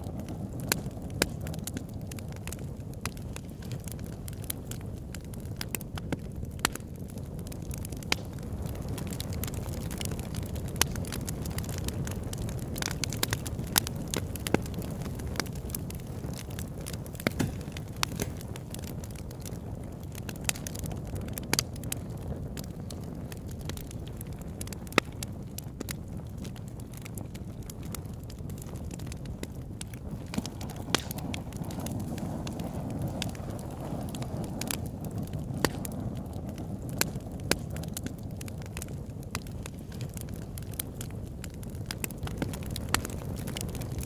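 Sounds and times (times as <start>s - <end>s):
campfire flames rumbling: 0.0s - 44.0s
fire crackles and pops: 0.0s - 44.0s.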